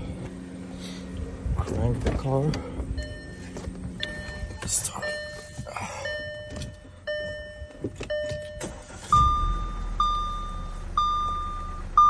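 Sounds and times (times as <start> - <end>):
car engine starting and idling: 0.0 - 12.0
dashboard warning chime: 2.6 - 12.0.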